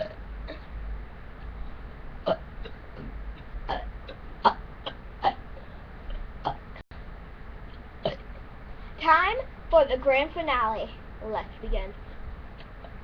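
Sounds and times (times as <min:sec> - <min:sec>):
small burps: 0:00.0 - 0:00.7, 0:02.2 - 0:03.1, 0:03.7 - 0:05.4, 0:06.1 - 0:06.7, 0:08.0 - 0:08.4.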